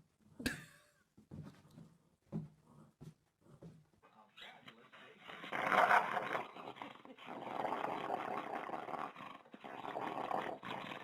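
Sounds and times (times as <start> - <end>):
dog growling: 4.9 - 11.0.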